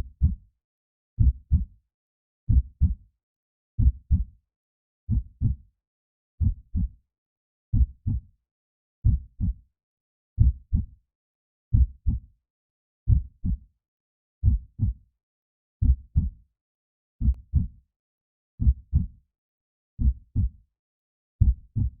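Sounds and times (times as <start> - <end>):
heartbeat thumps: 2.5 - 3.0, 5.1 - 5.6, 21.4 - 22.0.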